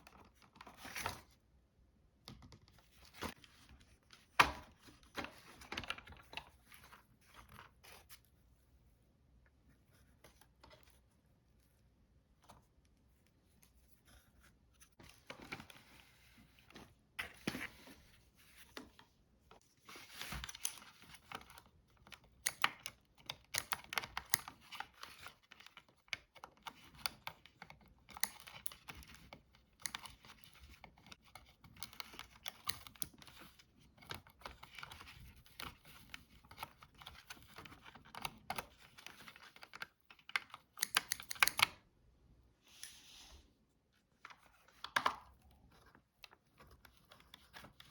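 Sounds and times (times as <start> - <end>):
small plastic parts clicking: 37.5 - 41.8.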